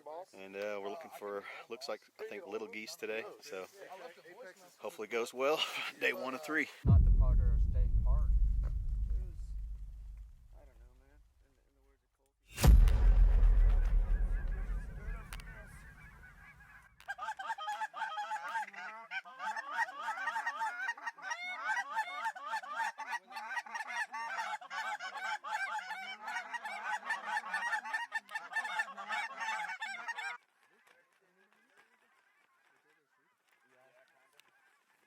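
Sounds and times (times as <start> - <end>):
geese honking and cackling: 15.2 - 30.9.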